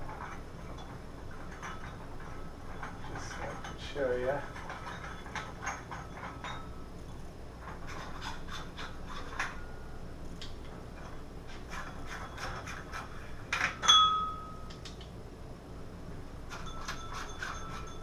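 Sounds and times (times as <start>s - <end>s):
glass clink with ringing: 5.0s - 6.9s, 13.8s - 14.7s, 16.5s - 18.0s.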